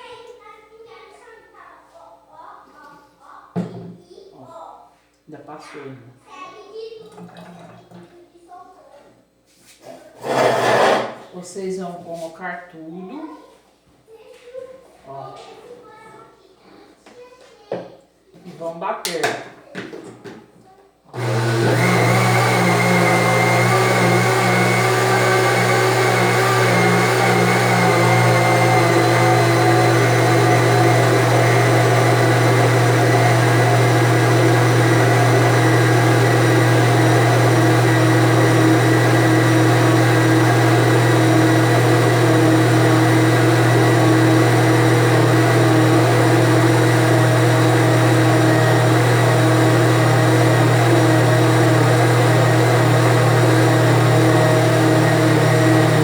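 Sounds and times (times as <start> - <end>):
blender motor running: 10.2 - 11.2, 21.1 - 56.0.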